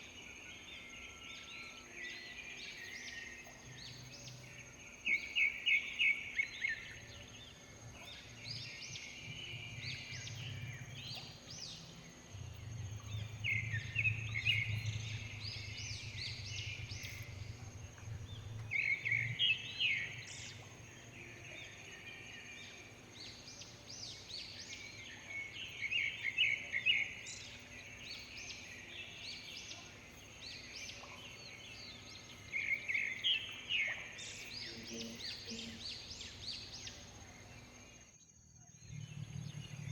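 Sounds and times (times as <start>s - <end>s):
birds chattering: 8.0s - 21.9s
low hum: 8.9s - 21.7s.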